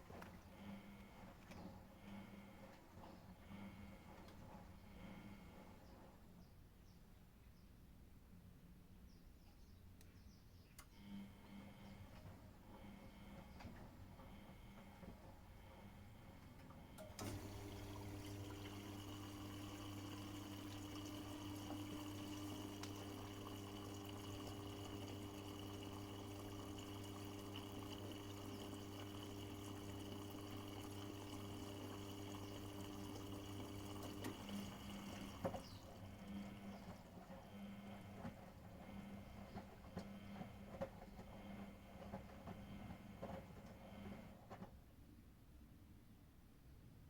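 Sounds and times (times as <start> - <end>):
inlet valve humming: 17.0 - 41.3
water running into machine: 17.0 - 44.2.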